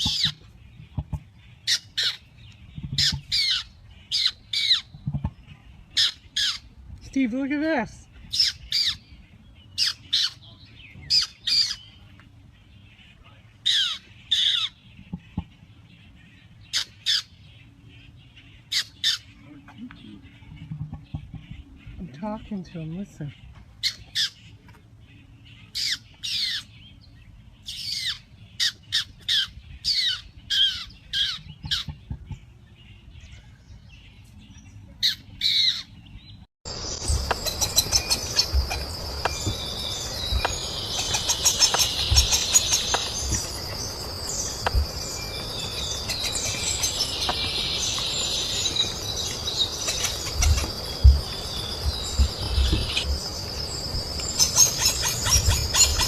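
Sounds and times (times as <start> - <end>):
harsh noisy bird calls: 0.0 - 56.0
downward-sliding bird calls: 36.7 - 56.0
steady high whine: 36.7 - 56.0.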